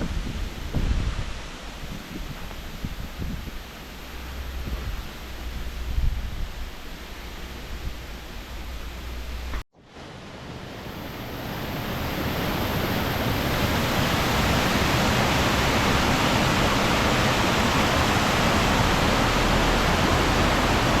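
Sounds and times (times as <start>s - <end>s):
waterfall rushing: 0.0s - 5.9s, 10.0s - 21.0s.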